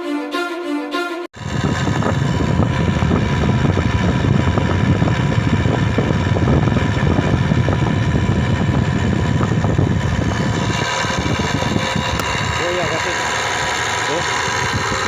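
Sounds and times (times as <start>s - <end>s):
motor low rumble: 1.4s - 12.6s.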